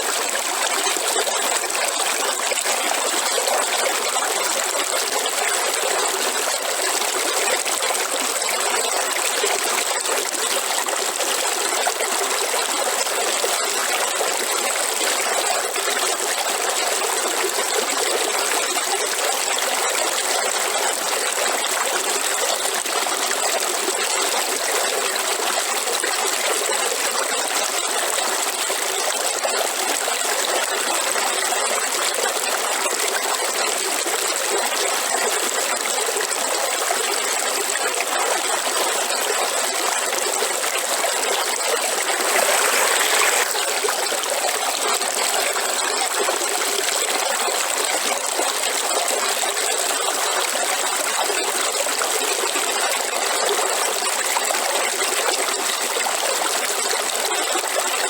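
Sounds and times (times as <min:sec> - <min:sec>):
river water flowing: 0:35.3 - 0:55.9.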